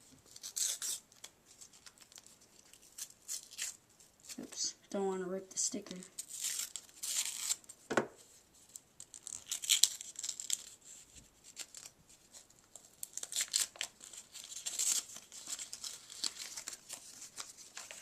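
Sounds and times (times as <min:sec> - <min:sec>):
sticker packaging torn and crinkled: 0:00.3 - 0:04.5, 0:06.2 - 0:07.6, 0:09.0 - 0:10.8, 0:11.4 - 0:18.0.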